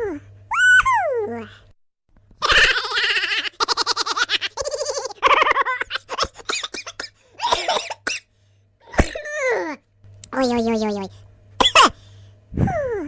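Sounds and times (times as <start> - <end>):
comic laughing and giggling: 2.4 - 8.0.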